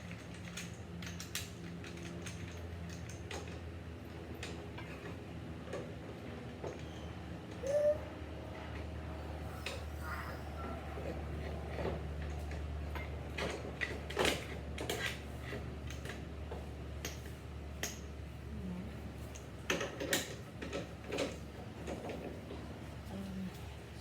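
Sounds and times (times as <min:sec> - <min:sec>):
steady low hum: 0:07.7 - 0:13.4.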